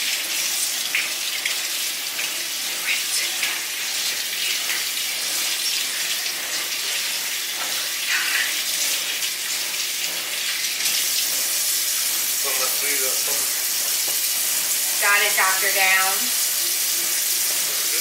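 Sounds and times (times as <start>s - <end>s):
tap running into sink: 12.9s - 14.8s.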